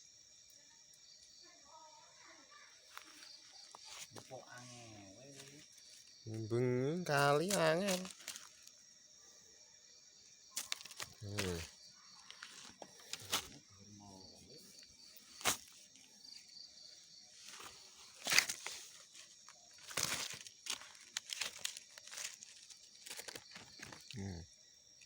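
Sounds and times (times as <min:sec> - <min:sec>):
insects chirring: 0:00.0 - 0:25.0
crackling rustles: 0:02.9 - 0:06.1, 0:07.4 - 0:08.8, 0:10.6 - 0:13.7, 0:15.0 - 0:16.2, 0:17.3 - 0:24.2.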